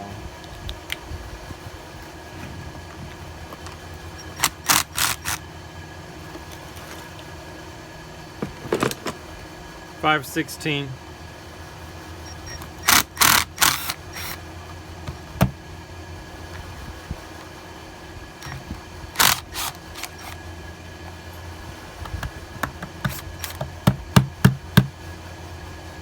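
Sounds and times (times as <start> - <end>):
tools and metal parts clattering: 8.4 - 9.3.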